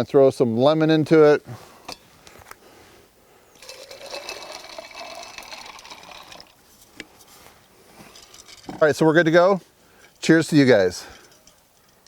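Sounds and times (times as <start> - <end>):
liquid pouring into a glass: 3.6 - 6.6.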